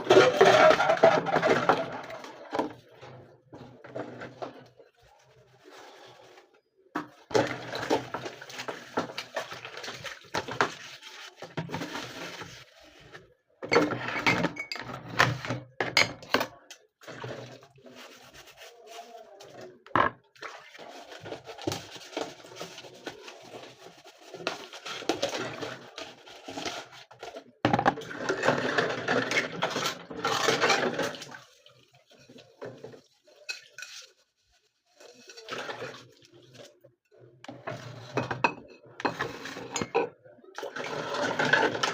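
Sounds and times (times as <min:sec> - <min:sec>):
dishes and cutlery clinking: 0:32.2 - 0:34.2, 0:37.7 - 0:41.9.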